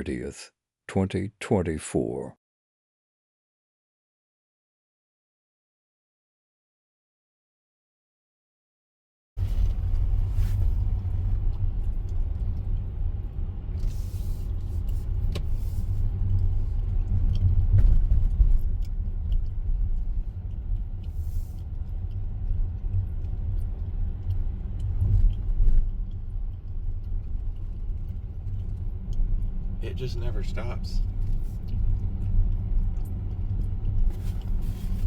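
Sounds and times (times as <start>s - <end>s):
road and engine rumble: 9.4s - 35.0s.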